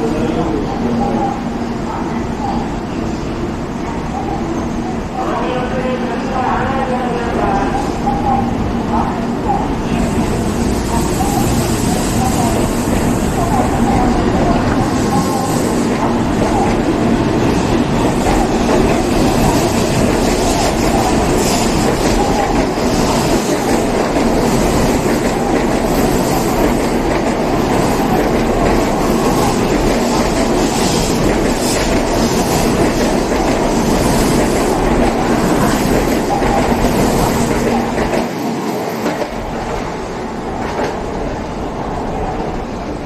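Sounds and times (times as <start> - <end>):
train running noise: 0.0 - 43.0.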